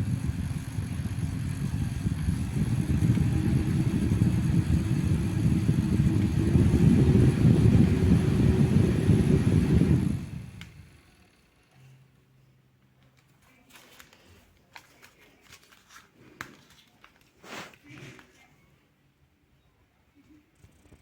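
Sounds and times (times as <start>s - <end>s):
fan airflow buffeting microphone: 0.0s - 11.2s.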